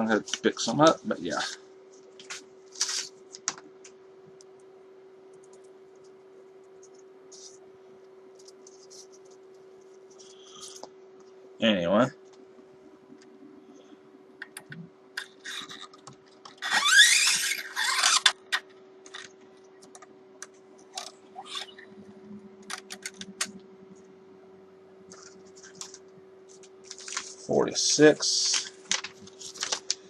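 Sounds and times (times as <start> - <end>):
steady hum: 0.0 - 30.0.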